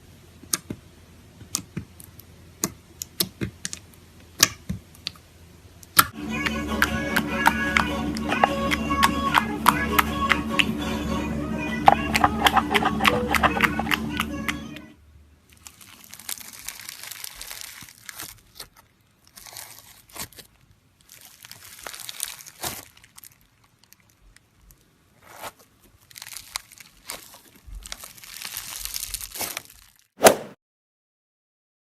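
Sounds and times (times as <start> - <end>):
slime squeezed by hand: 11.8 - 14.3, 15.6 - 18.7, 21.0 - 24.0, 25.2 - 30.6.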